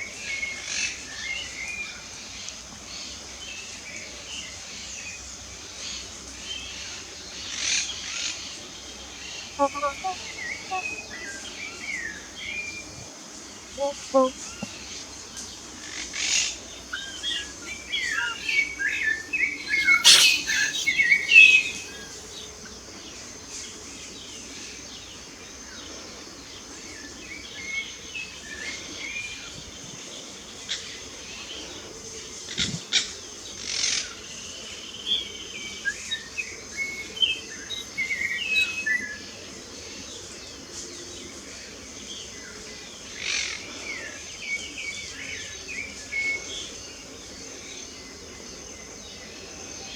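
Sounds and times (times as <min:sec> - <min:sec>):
wild birds singing and chirping: 0:02.9 - 0:49.9
faint high hiss: 0:09.2 - 0:32.2.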